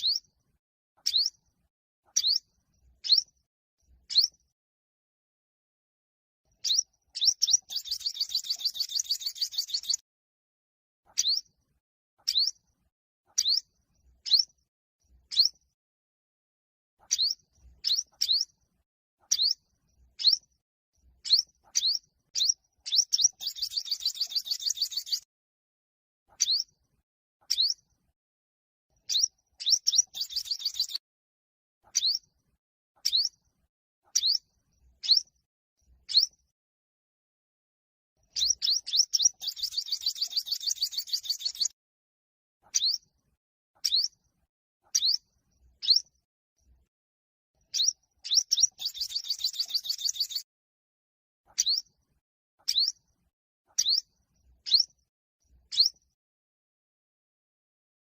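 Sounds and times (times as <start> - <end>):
bird chirps sweeping upward: 1.1 - 1.3, 2.2 - 2.4, 3.0 - 3.3, 4.1 - 4.4, 6.6 - 10.0, 11.1 - 11.5, 12.3 - 12.6, 13.4 - 13.6, 15.3 - 15.6, 17.1 - 18.5, 19.3 - 19.6, 20.2 - 20.4, 21.2 - 25.3, 26.4 - 26.7, 27.5 - 27.8, 29.0 - 31.0, 31.9 - 32.2, 33.0 - 33.3, 35.0 - 35.3, 36.1 - 36.4, 38.3 - 41.8, 42.7 - 43.0, 43.8 - 44.1, 45.0 - 45.2, 45.8 - 46.1, 47.7 - 50.5, 51.5 - 51.9, 52.7 - 53.0, 53.8 - 54.1, 54.7 - 54.9, 55.7 - 56.0.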